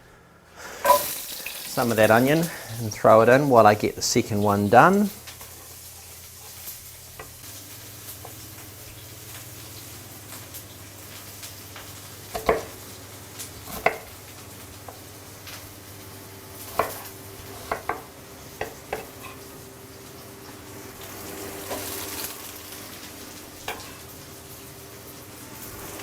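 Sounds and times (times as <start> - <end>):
onion sizzling in a pan: 0.6 - 26.0
knife chopping on cutting board: 12.3 - 12.8, 13.6 - 14.2, 16.6 - 19.4.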